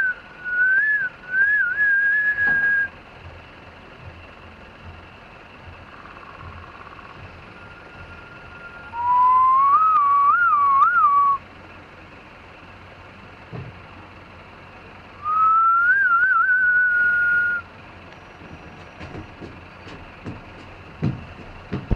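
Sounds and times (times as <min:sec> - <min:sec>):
crow whistle-like calls: 0:00.0 - 0:02.9, 0:08.1 - 0:11.4, 0:15.2 - 0:17.7
traffic hum: 0:00.0 - 0:21.9.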